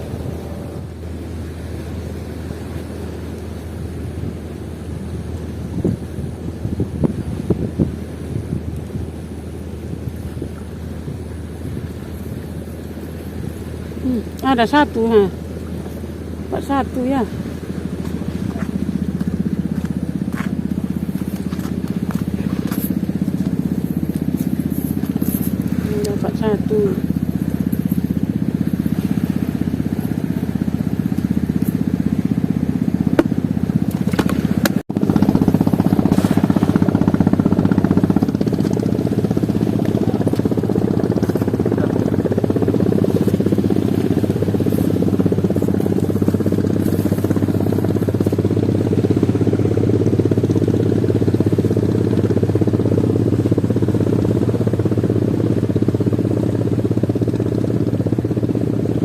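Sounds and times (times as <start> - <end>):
small engine running: 0.0 - 59.0.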